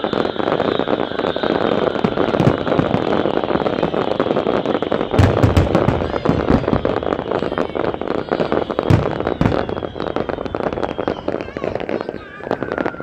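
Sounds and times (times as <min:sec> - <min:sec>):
fireworks crackling: 0:00.0 - 0:13.0
fireworks shells booming: 0:00.0 - 0:13.0.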